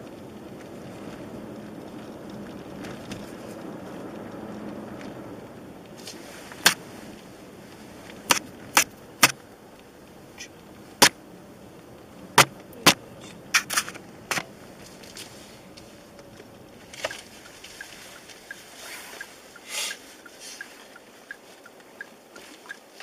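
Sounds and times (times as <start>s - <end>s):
low steady rumble: 0.0s - 23.0s.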